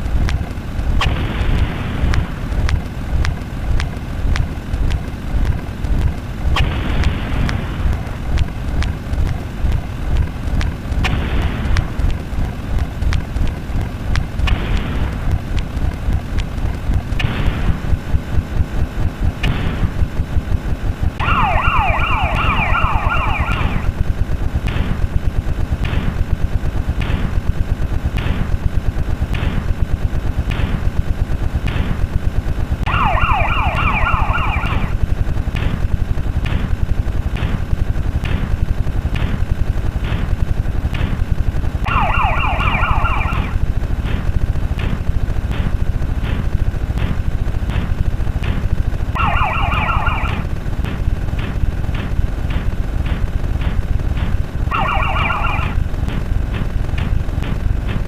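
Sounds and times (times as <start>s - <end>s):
dense rapid low rattle: 0.0s - 58.0s
sharp electronic ticks: 0.0s - 58.0s
falling alarm-like electronic chirps: 21.2s - 24.0s, 32.9s - 35.0s, 41.8s - 43.6s, 49.2s - 50.5s, 54.7s - 55.8s.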